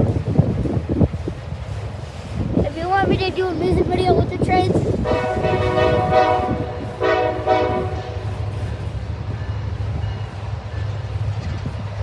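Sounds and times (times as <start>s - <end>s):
freight train rumbling past: 0.0s - 12.0s
locomotive horn blasts: 5.0s - 8.5s.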